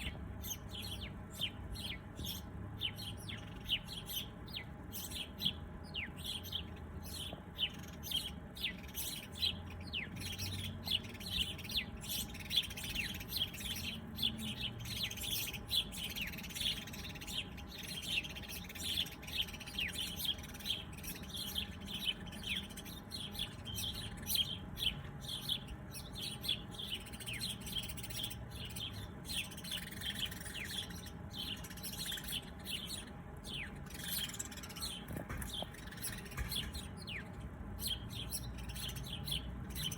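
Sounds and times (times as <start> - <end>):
birds chirping: 0.0 - 39.9.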